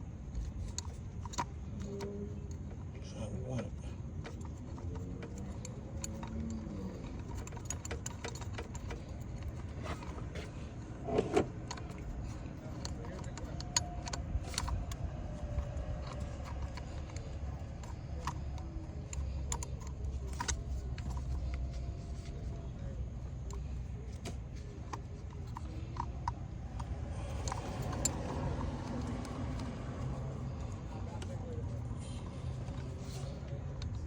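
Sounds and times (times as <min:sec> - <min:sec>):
tools clinking on engine parts: 0:00.4 - 0:34.0
metal clatter: 0:03.8 - 0:34.0.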